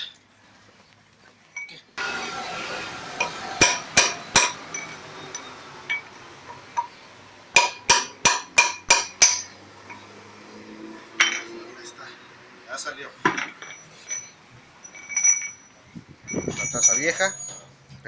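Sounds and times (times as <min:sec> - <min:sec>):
hammer striking metal: 0:02.0 - 0:10.0.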